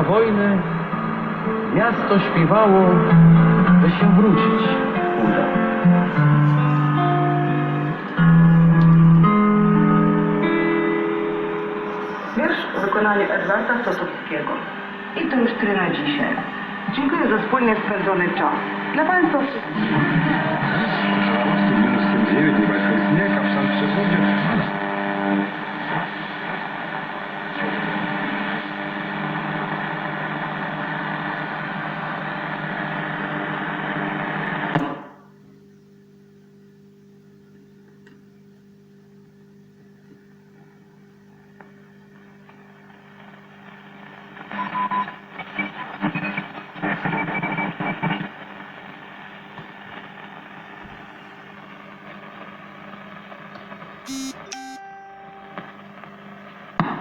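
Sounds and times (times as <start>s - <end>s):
radio whistling tones: 4.4s - 9.1s, 9.7s - 15.0s, 54.1s - 54.8s
faint crackling signals: 41.6s - 56.8s
low steady hum: 54.1s - 56.6s.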